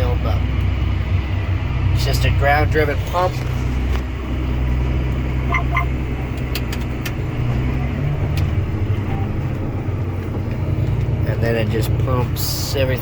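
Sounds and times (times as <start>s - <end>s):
tractor diesel engine running: 0.0s - 13.0s
sharp clicks: 5.5s - 7.2s.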